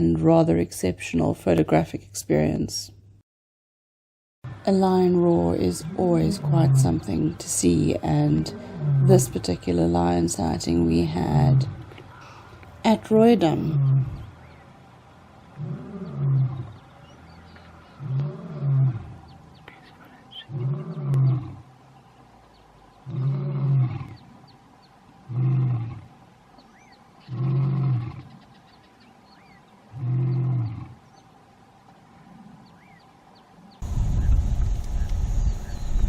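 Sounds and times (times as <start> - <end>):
lion roaring: 8.3 - 9.3, 15.6 - 19.4, 20.4 - 21.7, 23.0 - 24.4, 25.2 - 26.2, 27.2 - 28.4, 29.9 - 31.1.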